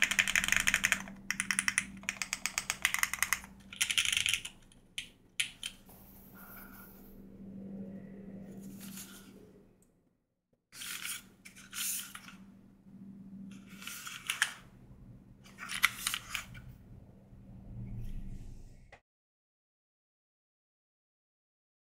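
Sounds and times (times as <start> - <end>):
low hum: 4.4 - 10.1.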